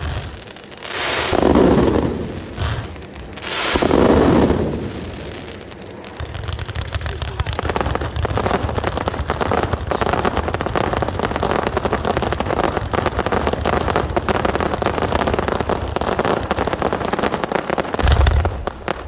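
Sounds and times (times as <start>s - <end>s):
heavy low firework boom: 0.0s - 5.4s, 18.0s - 19.0s
firecrackers rattling: 0.0s - 19.0s.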